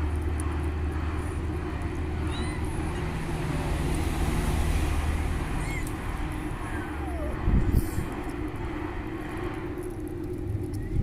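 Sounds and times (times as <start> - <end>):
steady low rumble: 0.0 - 11.0
cat meowing: 2.2 - 3.2, 5.4 - 7.4.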